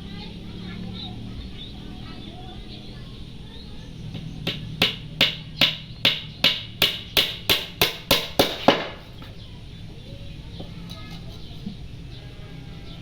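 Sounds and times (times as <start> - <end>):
sharp knocks: 4.1 - 9.1.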